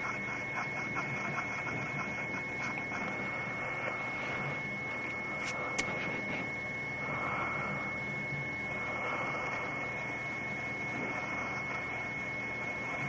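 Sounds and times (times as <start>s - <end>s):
high-pitched whine: 0.0s - 13.0s.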